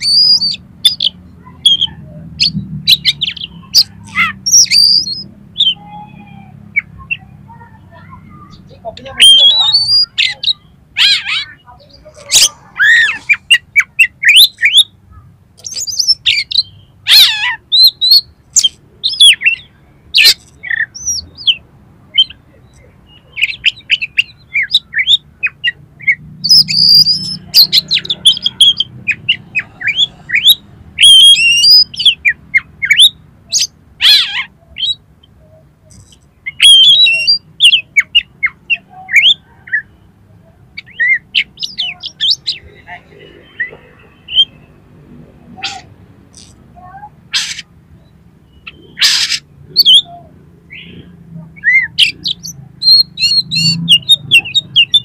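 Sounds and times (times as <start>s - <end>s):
bird singing whistles: 4.5s - 5.8s.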